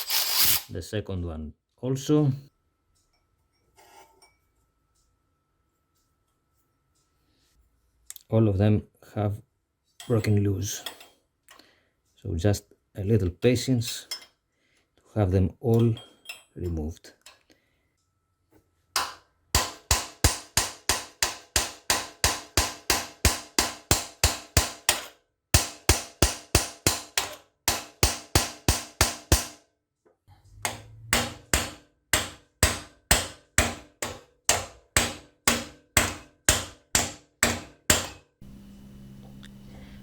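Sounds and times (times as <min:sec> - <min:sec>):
hammer striking metal: 0:19.0 - 0:29.6, 0:30.6 - 0:38.2.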